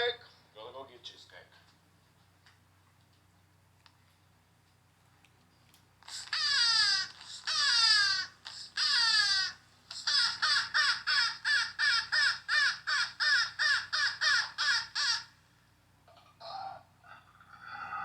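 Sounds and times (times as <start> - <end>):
bird calling loudly: 6.1 - 15.4.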